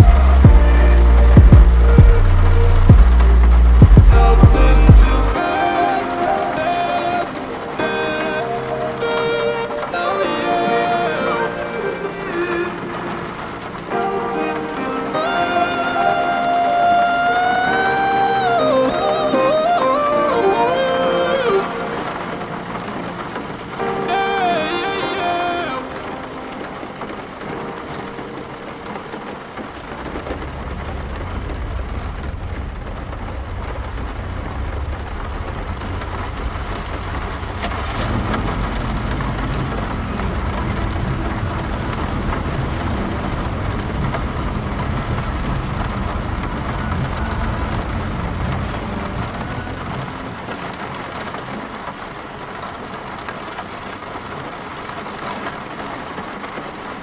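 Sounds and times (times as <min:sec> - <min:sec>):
long low rumble: 0:00.0 - 0:05.4
rain falling on a car: 0:00.0 - 0:57.0.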